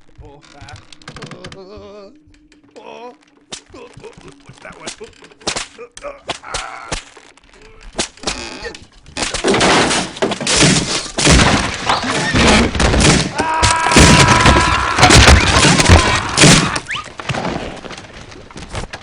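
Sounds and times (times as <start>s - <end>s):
crashes smashes and thuds: 9.2s - 19.0s.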